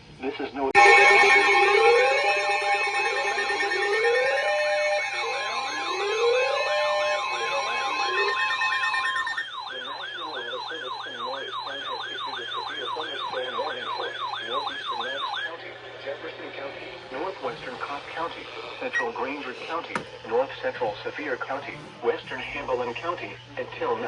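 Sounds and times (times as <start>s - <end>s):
fast yelp siren: 0.8s - 15.5s
wailing emergency sirens: 0.8s - 15.8s
steady alarm tones: 0.8s - 16.0s.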